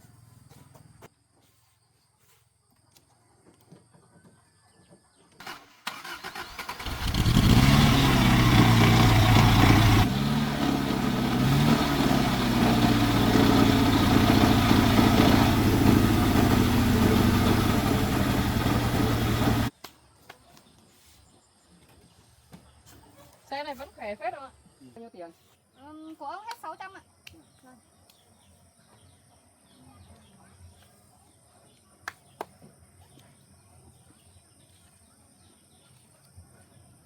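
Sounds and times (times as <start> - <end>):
starter cranking: 5.4 - 19.7
engine revving and running: 5.9 - 19.7.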